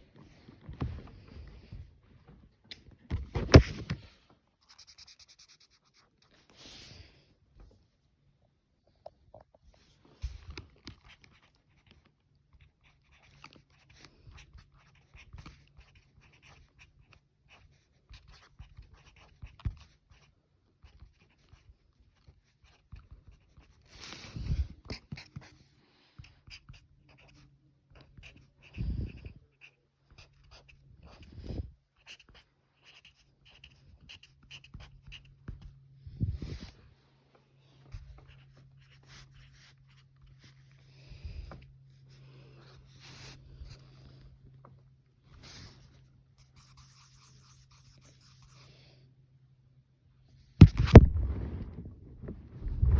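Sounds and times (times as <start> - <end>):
coloring strokes on paper: 4.6 - 7.0, 45.4 - 48.8.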